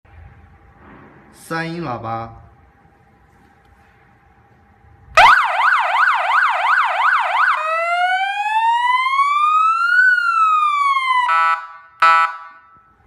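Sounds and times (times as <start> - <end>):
electronic siren yelp and wail: 5.2 - 12.6.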